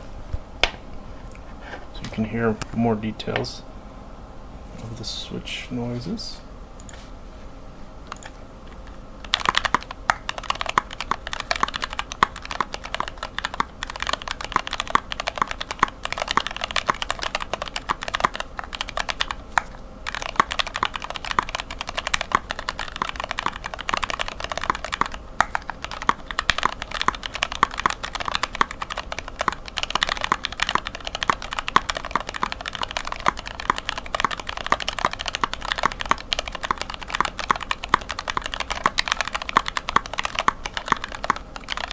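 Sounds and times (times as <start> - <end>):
mechanical keyboard typing: 9.2 - 41.9.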